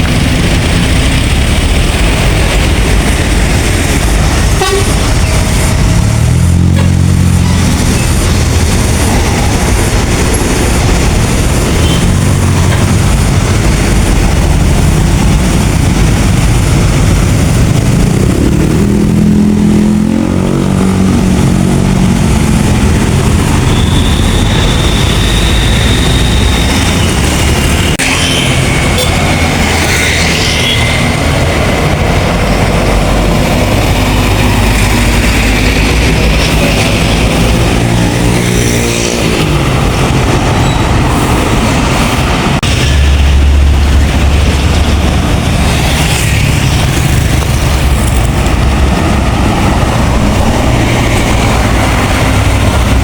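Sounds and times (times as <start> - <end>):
buses passing: 0.0 - 53.0
deep bus air horn: 4.5 - 5.1, 6.5 - 7.2.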